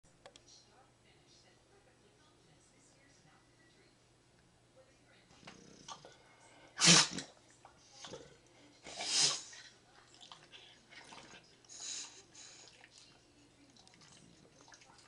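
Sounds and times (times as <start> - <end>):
dog sneezing: 6.8 - 7.3, 8.8 - 9.6.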